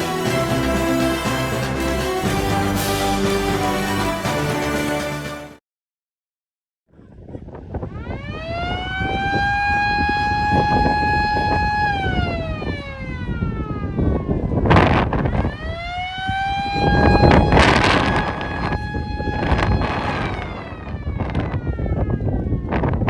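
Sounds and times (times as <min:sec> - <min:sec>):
warning siren wailing: 0:00.0 - 0:05.3, 0:07.9 - 0:23.0
wind gusts on microphone: 0:07.0 - 0:23.0.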